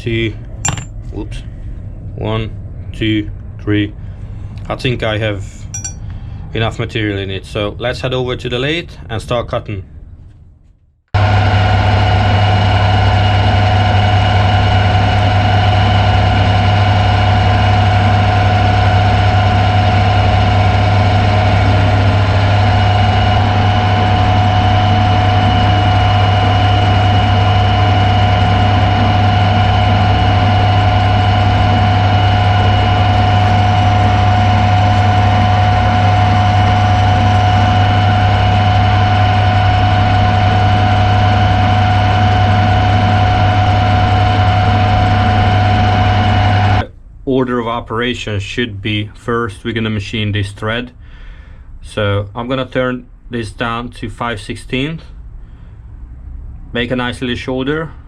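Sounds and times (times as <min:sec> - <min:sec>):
metal lathe motor hum and whine: 0:11.2 - 0:46.8.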